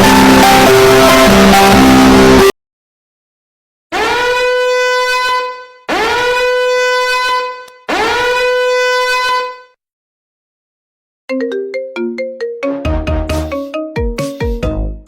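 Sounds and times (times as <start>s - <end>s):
horn-like alarm blast: 3.9s - 9.8s.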